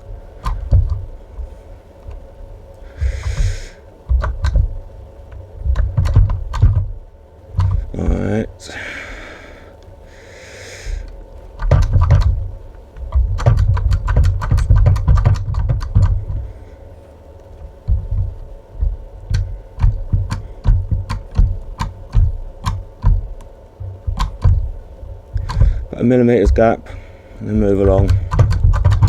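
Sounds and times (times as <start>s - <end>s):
cable crimper clicks and knocks: 0.4s - 1.1s, 4.1s - 6.9s, 7.6s - 7.9s, 11.6s - 12.4s, 13.0s - 16.5s, 17.5s - 26.6s, 27.6s - 29.0s.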